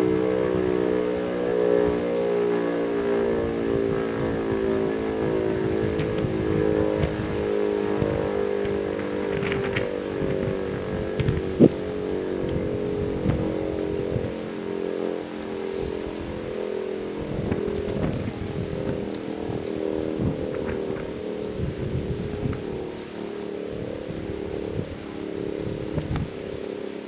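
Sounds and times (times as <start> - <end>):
siren howling: 0.0 - 27.0.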